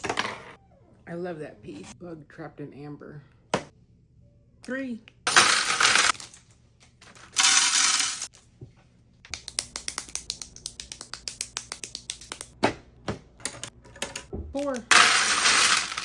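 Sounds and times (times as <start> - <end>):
plastic pieces clicking and clattering: 5.3 - 8.3, 13.4 - 16.0.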